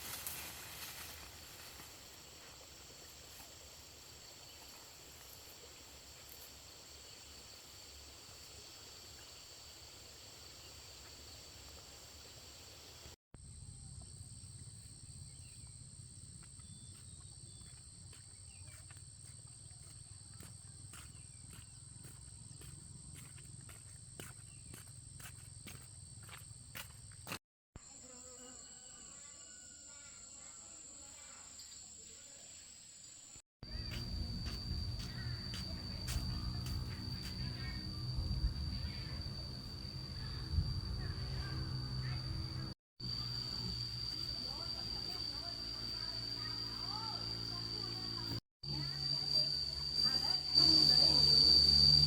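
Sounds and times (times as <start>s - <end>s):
insects chirring: 0.0s - 52.0s
low hum: 33.7s - 52.0s.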